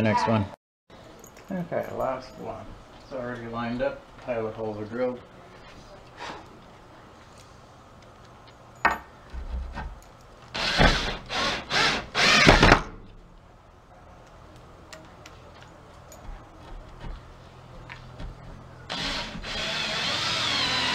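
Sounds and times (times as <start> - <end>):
power drill driving screw into wood: 10.5 - 12.9, 18.9 - 20.9.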